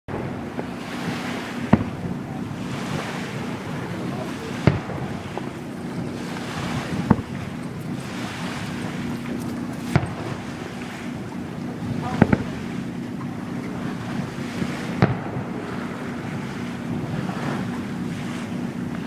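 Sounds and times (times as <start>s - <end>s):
water lapping: 0.1s - 19.0s
wind: 0.1s - 19.0s
sharp bang: 1.2s - 8.5s.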